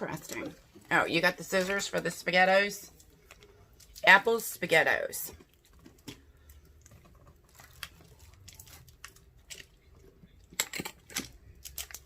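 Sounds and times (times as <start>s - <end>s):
snack wrappers crinkling: 5.5s - 10.2s, 11.0s - 12.0s.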